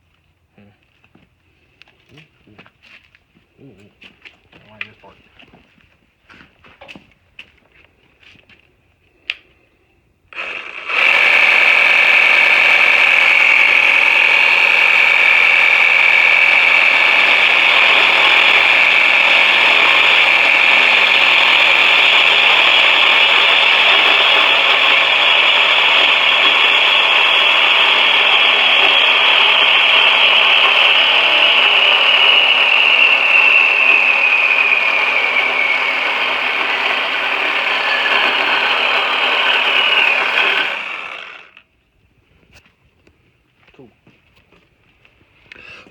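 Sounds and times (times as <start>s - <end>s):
motor whining: 10.3s - 41.6s.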